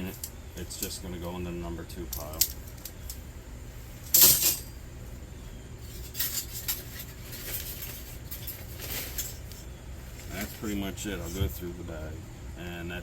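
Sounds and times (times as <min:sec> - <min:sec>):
scrap metal clatter: 0:04.0 - 0:04.8, 0:05.8 - 0:11.5
scrap metal clinking: 0:04.0 - 0:04.8, 0:05.8 - 0:11.4.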